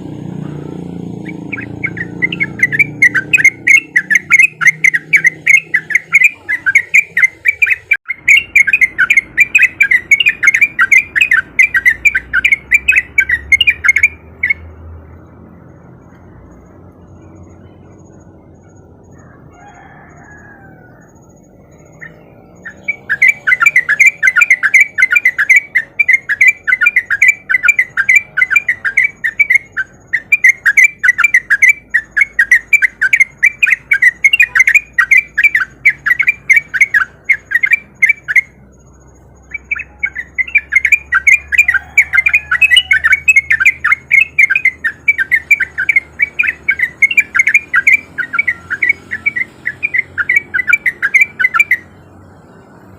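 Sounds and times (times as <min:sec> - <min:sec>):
bird singing chattering song: 0:00.0 - 0:19.5, 0:20.8 - 0:52.9.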